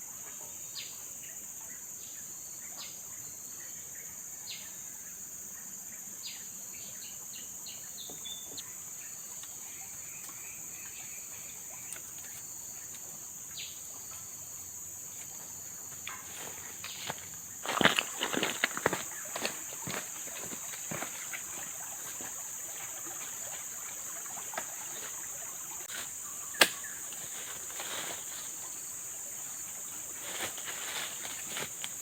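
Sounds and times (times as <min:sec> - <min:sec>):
insect chorus drone: 0:00.0 - 0:32.0
rustling: 0:16.1 - 0:32.0.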